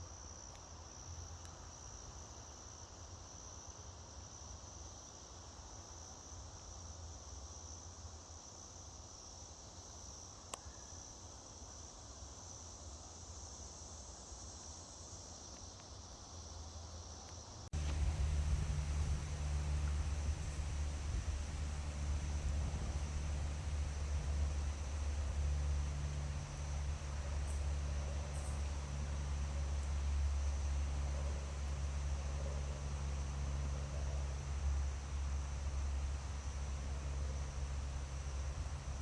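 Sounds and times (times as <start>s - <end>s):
insect chorus trilling: 17.8s - 39.0s
low rumble: 17.8s - 39.0s.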